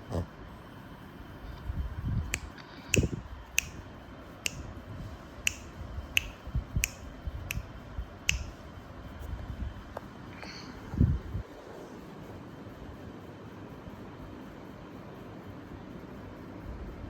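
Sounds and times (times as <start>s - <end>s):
dog snorting: 0.0s - 0.4s
dog breathing: 0.0s - 0.5s
sharp clicks: 2.4s - 3.8s, 5.5s - 7.7s, 8.3s - 8.6s.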